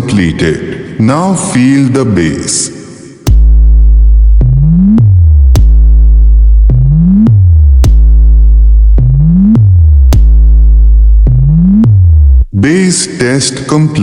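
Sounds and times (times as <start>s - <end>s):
drum machine hits: 3.3s - 12.6s
deep sliding sub-bass: 3.3s - 12.8s.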